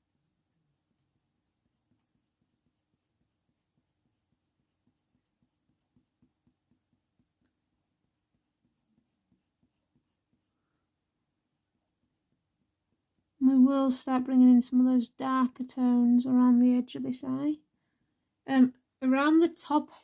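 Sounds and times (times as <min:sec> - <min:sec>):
pencil stroking on paper: 0:00.0 - 0:15.7.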